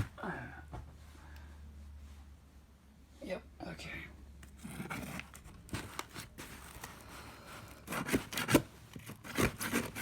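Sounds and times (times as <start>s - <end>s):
cardboard box rustling and scraping: 4.6s - 10.0s.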